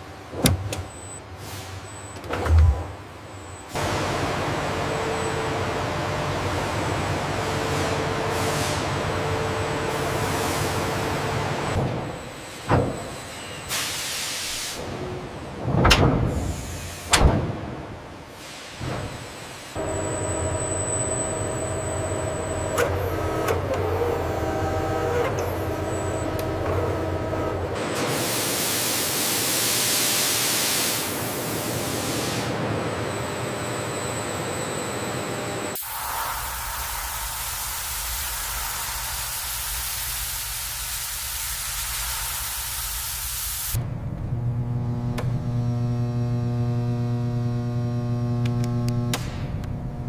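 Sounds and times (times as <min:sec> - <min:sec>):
machine hum: 0:00.0 - 0:08.3, 0:19.8 - 0:27.8, 0:32.6 - 0:50.0
low hum: 0:00.3 - 0:03.6
steady hiss: 0:35.8 - 0:43.8.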